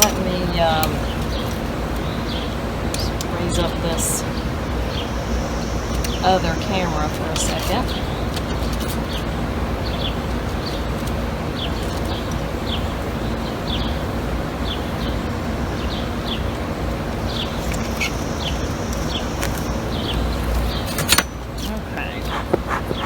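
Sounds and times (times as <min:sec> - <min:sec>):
steady outdoor noise: 0:00.0 - 0:23.0
small bird chirping: 0:17.3 - 0:23.0
faint low hum: 0:21.6 - 0:23.0.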